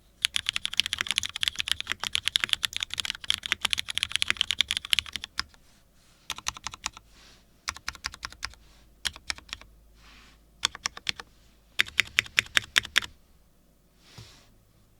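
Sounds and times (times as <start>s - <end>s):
mechanical keyboard typing: 0.2s - 5.6s, 6.3s - 7.0s, 7.7s - 9.7s, 10.6s - 13.1s.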